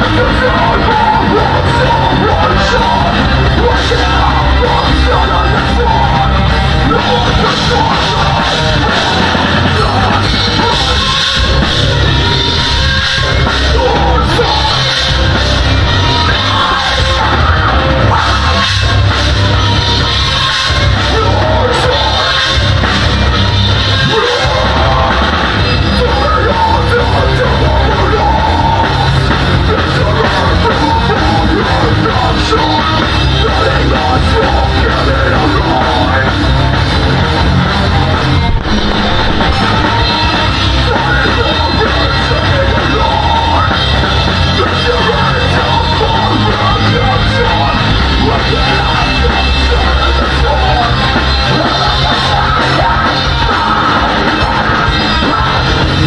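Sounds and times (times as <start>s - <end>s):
live metal band playing: 0.0s - 56.0s
shouted vocals: 0.0s - 56.0s.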